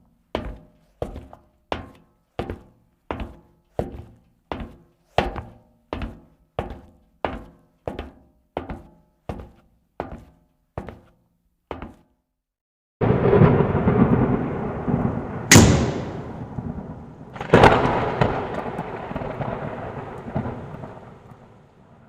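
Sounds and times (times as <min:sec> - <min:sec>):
thunderclap with sharp cracks: 0:13.0 - 0:22.0.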